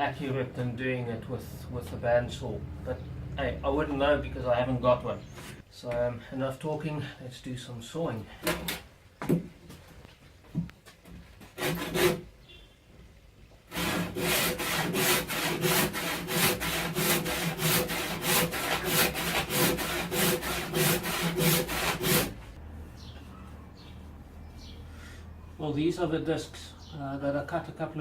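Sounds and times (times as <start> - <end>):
hand saw cutting wood: 11.5 - 12.2, 13.7 - 22.4.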